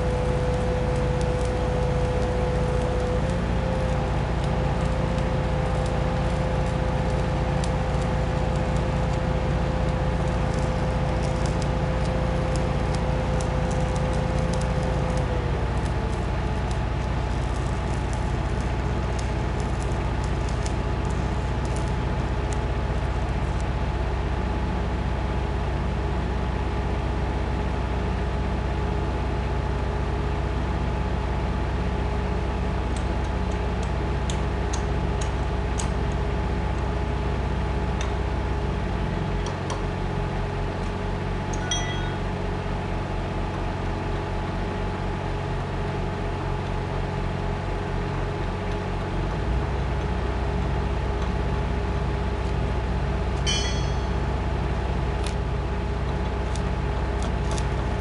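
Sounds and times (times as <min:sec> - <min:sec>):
heavy machinery humming: 0:00.0 - 0:23.6, 0:48.4 - 0:58.0.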